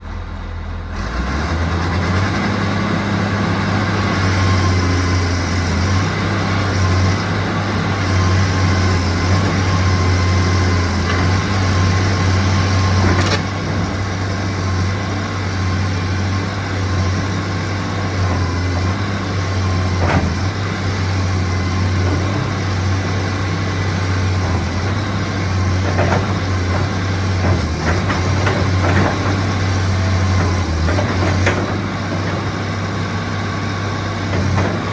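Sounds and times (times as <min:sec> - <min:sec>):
excavator diesel engine humming: 0:00.0 - 0:34.9.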